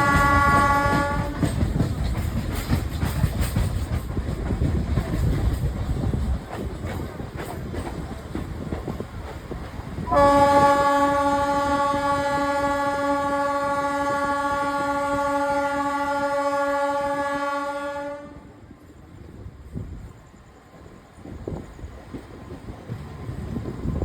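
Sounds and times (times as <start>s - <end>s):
train horn blast: 0.0s - 1.6s, 10.1s - 18.6s
train rumbling clatter: 0.0s - 24.0s.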